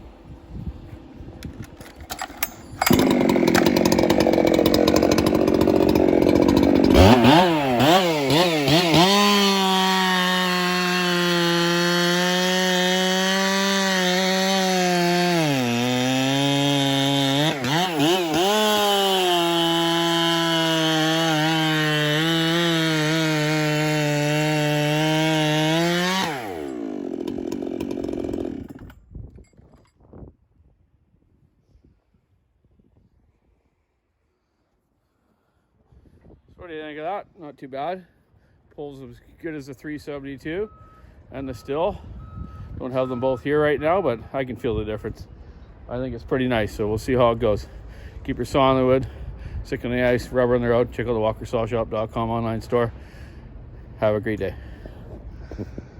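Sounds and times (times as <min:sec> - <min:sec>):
chainsaw cutting wood: 0:01.4 - 0:29.1.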